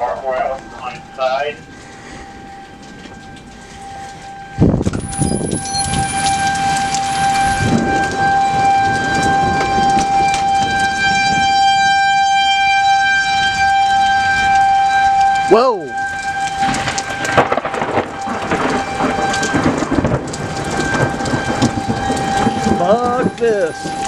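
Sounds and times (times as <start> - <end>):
steady high tone: 0.0 - 8.8
rain: 0.0 - 24.0
thunderclap and rumbling thunder: 2.4 - 24.0.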